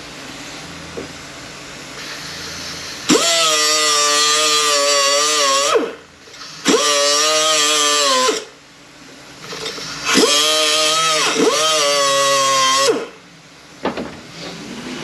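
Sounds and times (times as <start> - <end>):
power tool whining: 2.0 - 8.6, 9.4 - 13.2.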